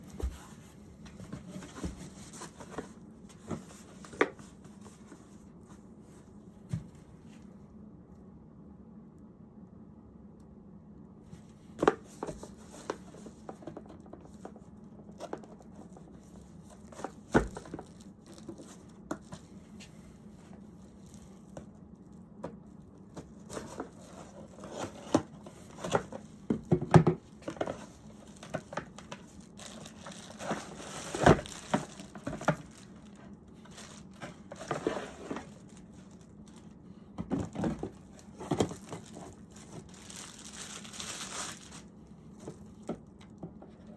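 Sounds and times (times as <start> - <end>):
packaging crinkling and tearing: 28.2 - 36.7, 37.9 - 41.9.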